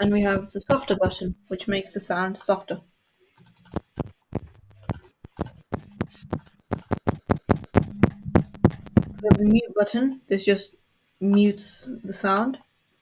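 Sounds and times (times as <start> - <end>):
sharp percussive hits: 3.4 - 9.6
steady low tone: 3.6 - 9.7.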